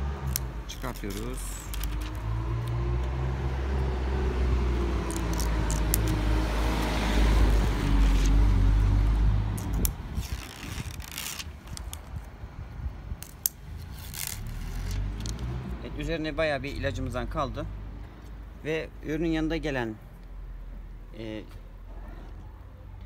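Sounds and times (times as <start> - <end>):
motor vehicle passing: 0.0 - 12.0, 13.2 - 18.5.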